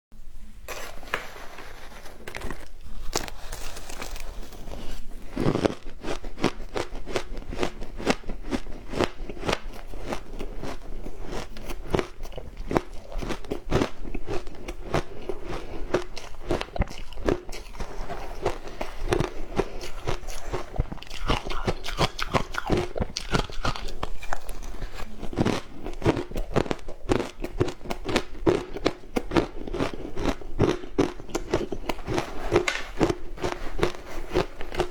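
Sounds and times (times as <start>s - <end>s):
ice crunching between teeth: 2.3s - 34.9s.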